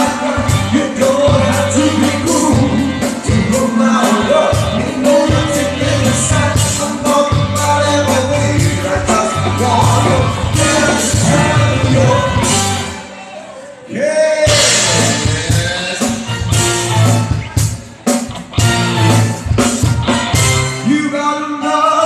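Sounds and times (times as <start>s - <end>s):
live band playing pop-rock: 0.0s - 13.6s, 14.4s - 22.0s
person singing: 0.0s - 16.9s.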